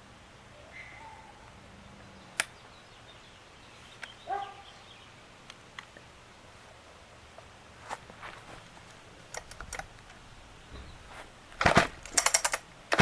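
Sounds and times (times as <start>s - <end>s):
sharp click: 2.4s - 2.6s.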